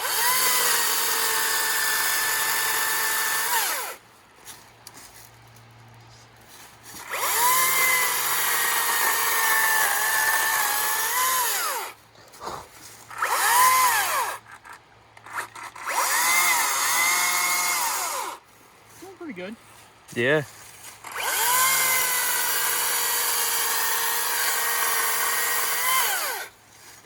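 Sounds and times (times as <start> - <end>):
electric chainsaw cutting wood: 0.0 - 4.0, 6.9 - 12.0, 13.0 - 18.4, 21.0 - 26.6.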